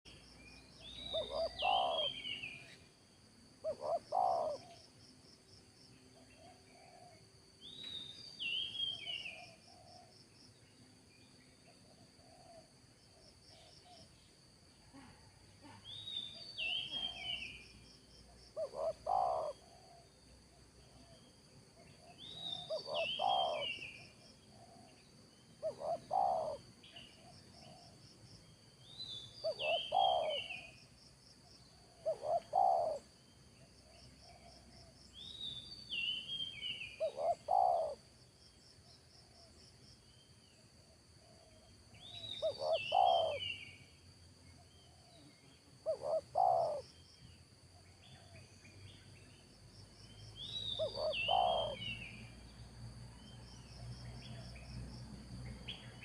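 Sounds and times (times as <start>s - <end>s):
insects trilling: 0.1s - 56.0s
dove cooing: 1.1s - 2.4s, 3.6s - 4.8s, 6.4s - 7.2s, 12.2s - 12.7s, 18.5s - 20.1s, 22.0s - 25.0s, 25.6s - 27.9s, 29.4s - 30.7s, 31.8s - 33.1s, 36.9s - 38.0s, 42.4s - 43.7s, 44.9s - 46.8s, 50.8s - 52.2s.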